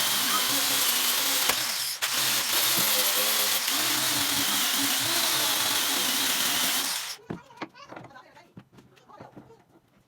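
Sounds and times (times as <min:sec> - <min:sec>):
electric power tool running: 0:00.0 - 0:07.2.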